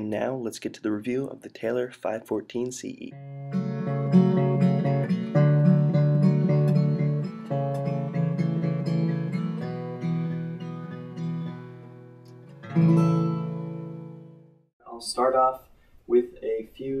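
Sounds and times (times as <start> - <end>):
acoustic guitar picking: 3.2 - 14.5.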